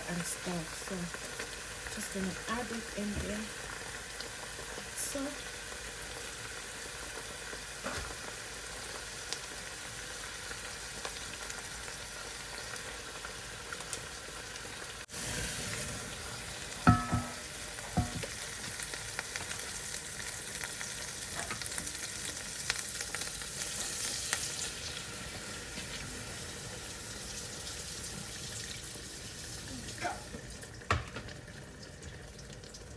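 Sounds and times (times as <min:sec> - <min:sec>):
food sizzling in oil: 0:00.0 - 0:32.9
ringing metal clanks: 0:16.9 - 0:18.2.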